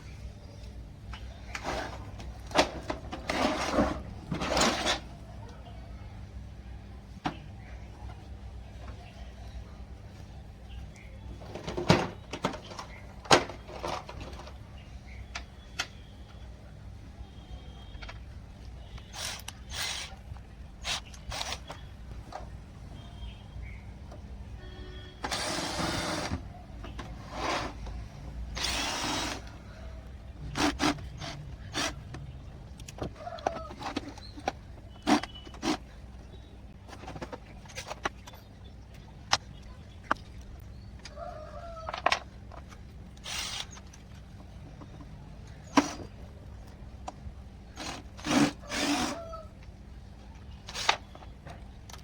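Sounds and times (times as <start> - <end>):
plastic and metal clicks and knocks: 30.5 - 35.9.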